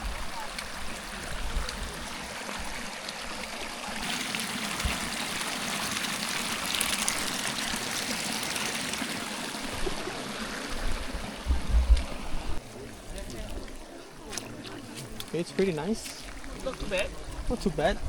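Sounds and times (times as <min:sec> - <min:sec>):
water flowing in a stream: 0:00.0 - 0:18.0
low bumps: 0:10.7 - 0:12.6.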